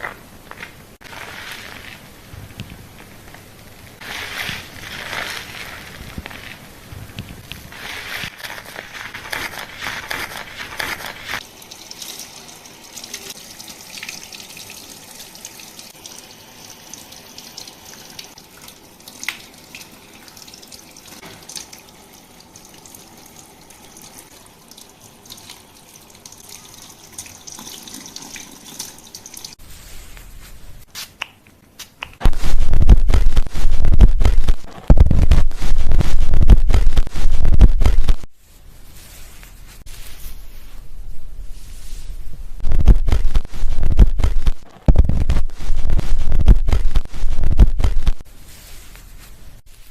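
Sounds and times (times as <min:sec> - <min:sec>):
water splashing and trickling: 0:11.4 - 0:29.6.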